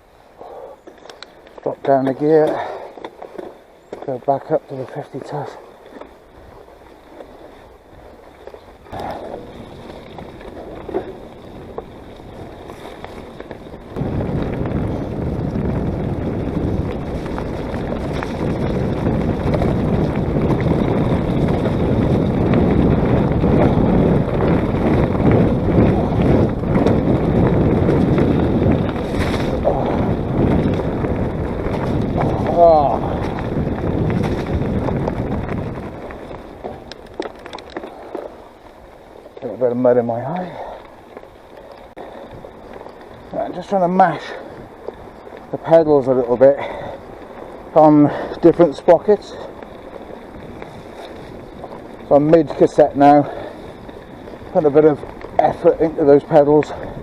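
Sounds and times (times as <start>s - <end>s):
trail rustle: 0.0s - 57.0s
wind buffeting microphone: 0.0s - 57.0s
faint clicks: 0.8s - 4.1s.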